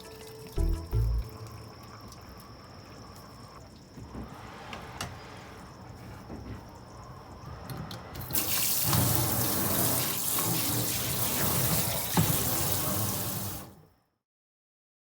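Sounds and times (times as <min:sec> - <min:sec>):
tap water running into sink: 0:08.2 - 0:13.7.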